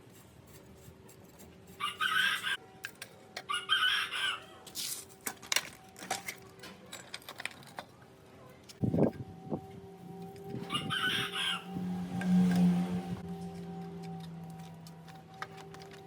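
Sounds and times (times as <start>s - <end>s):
rooster crowing: 1.8s - 2.6s, 3.5s - 4.5s, 10.5s - 12.0s.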